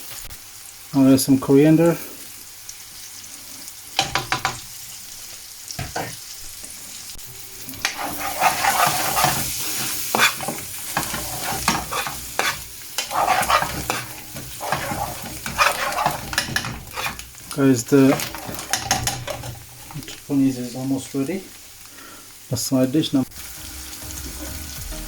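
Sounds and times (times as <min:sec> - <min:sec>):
curry sizzling in a pan: 0:00.0 - 0:25.0
spoon stirring and scraping: 0:07.8 - 0:20.2.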